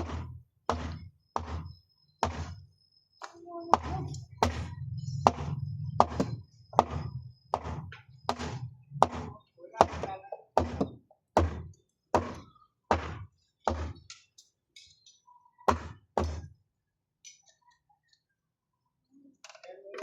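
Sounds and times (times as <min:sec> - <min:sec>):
heavy knocks: 0:03.7 - 0:14.0.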